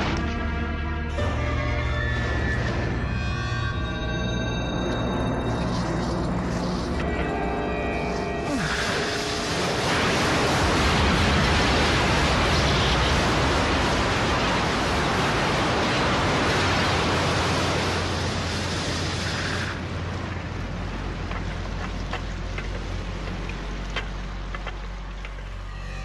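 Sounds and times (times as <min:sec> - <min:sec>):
low rumble: 0:00.0 - 0:26.0
rushing water torrent: 0:05.4 - 0:24.4.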